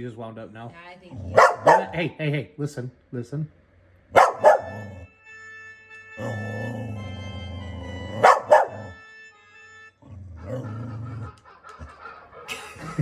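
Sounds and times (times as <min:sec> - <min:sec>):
dog barking: 0:01.3 - 0:02.1, 0:04.2 - 0:05.0, 0:08.1 - 0:09.0.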